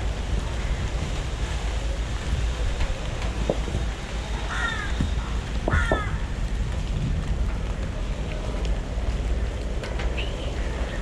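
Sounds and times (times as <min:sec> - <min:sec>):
wind and surf rumble: 0:00.0 - 0:11.0
crow cawing: 0:04.5 - 0:05.0, 0:05.7 - 0:06.3.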